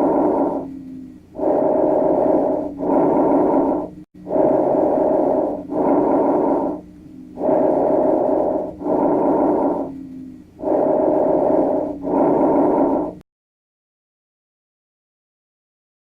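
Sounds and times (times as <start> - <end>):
breathing through stethoscope: 0.0 - 13.2.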